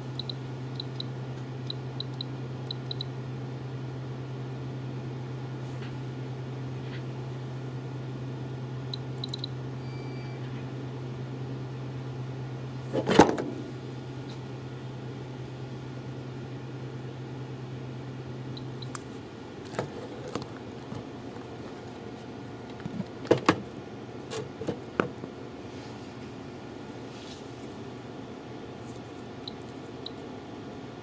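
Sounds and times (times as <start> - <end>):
low electrical hum: 0.0 - 31.0.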